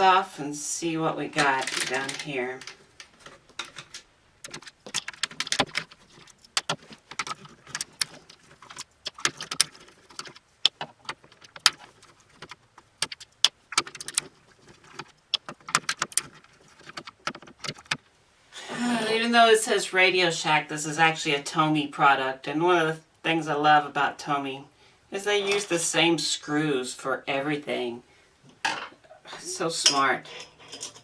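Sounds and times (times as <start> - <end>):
screws and plastic parts rattling: 1.4 - 18.0, 29.9 - 31.0.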